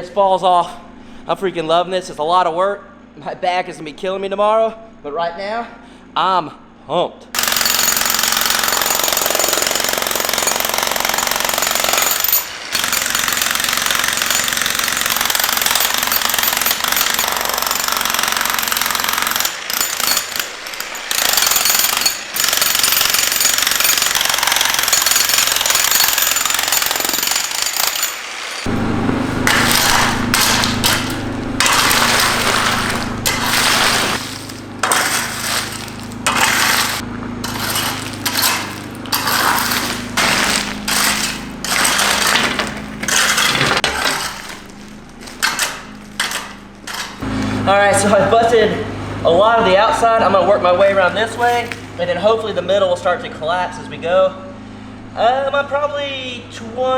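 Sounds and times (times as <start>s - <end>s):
demolition hammer chiselling concrete: 7.4s - 48.4s, 50.8s - 52.0s.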